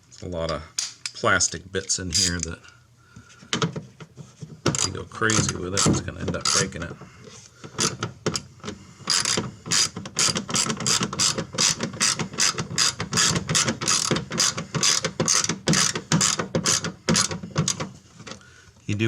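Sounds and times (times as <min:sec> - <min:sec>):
ratchet wrench clicking: 0:09.1 - 0:17.8.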